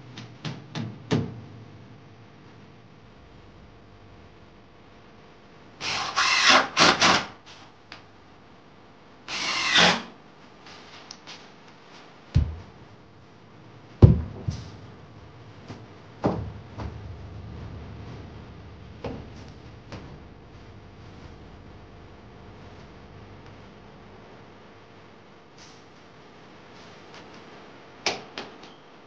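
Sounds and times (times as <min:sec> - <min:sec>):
dull knocks: 0:12.4 - 0:12.8, 0:14.0 - 0:15.0, 0:15.7 - 0:17.9.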